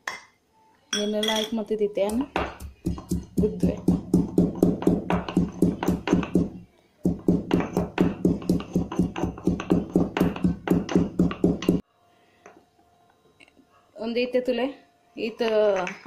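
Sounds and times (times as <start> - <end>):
pestle pounding in mortar: 2.1 - 11.8.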